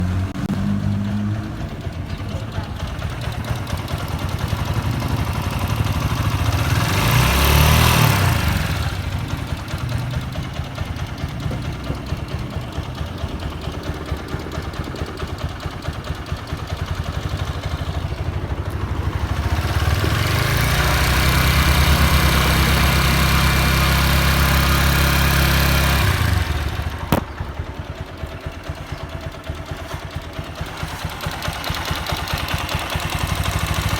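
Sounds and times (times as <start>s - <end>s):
motorcycle engine idling and revving: 0.0s - 33.9s.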